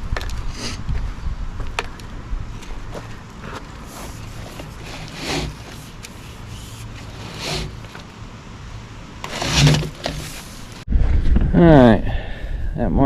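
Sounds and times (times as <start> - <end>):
plastic line scraping drain pipe: 3.9 - 8.1, 9.2 - 10.8.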